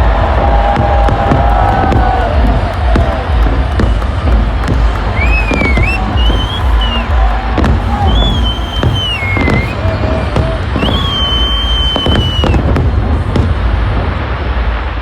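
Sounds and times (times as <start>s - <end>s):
deep rumble: 0.0s - 15.0s
fireworks bangs and crackles: 0.0s - 15.0s
firework whistles: 4.9s - 12.9s.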